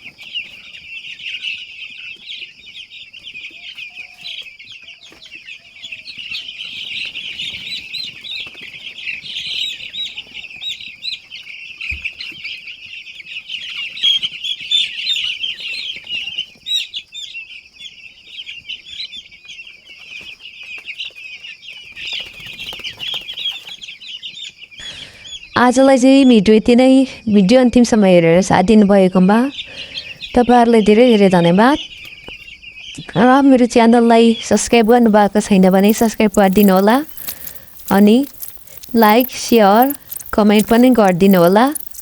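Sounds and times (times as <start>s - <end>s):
chickens peeping: 0.0s - 25.4s.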